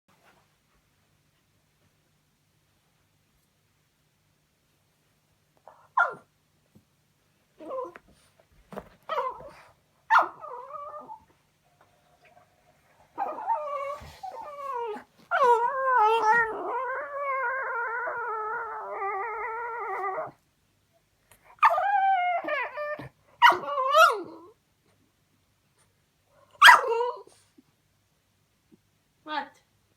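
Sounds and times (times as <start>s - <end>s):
dog whining: 7.6s - 8.3s, 9.1s - 11.4s, 12.2s - 20.4s, 21.5s - 24.6s.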